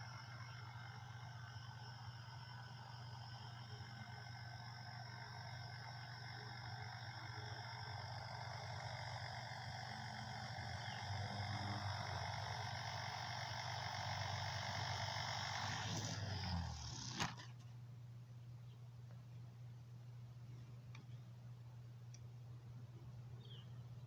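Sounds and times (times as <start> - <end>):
rc helicopter motor whine: 0.0 - 17.6.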